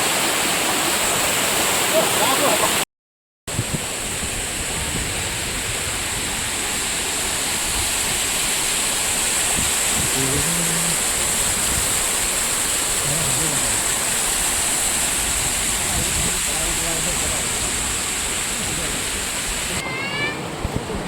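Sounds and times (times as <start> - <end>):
waterfall rushing: 0.0 - 2.8, 3.8 - 21.0
faint voice: 19.8 - 21.0.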